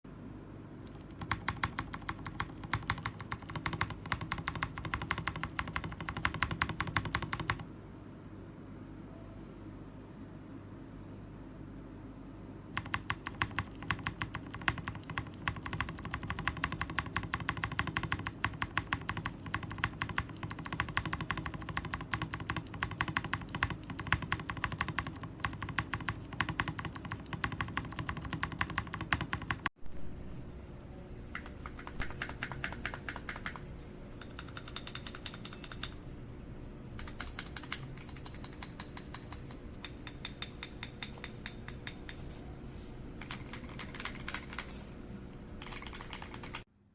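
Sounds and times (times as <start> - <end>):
mechanical keyboard typing: 0.8 - 7.6, 12.7 - 29.8, 31.3 - 36.1, 37.0 - 42.2, 43.2 - 44.9, 45.6 - 46.7
steady low hum: 29.7 - 46.9.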